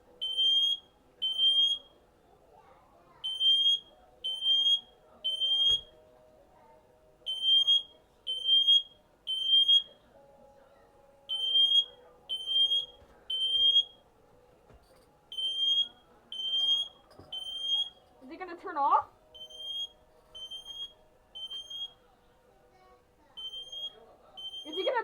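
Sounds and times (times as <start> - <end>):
smoke detector beeping: 0.2 - 2.0, 3.2 - 6.0, 7.3 - 10.0, 11.3 - 14.0, 15.3 - 18.0, 19.3 - 22.0, 23.4 - 25.0.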